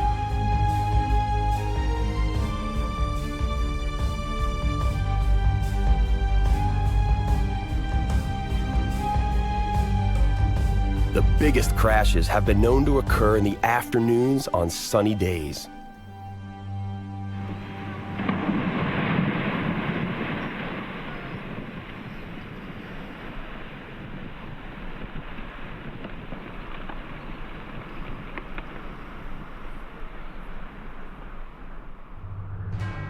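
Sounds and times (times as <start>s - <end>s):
wind: 15.7s - 33.0s
churning water: 17.3s - 27.6s.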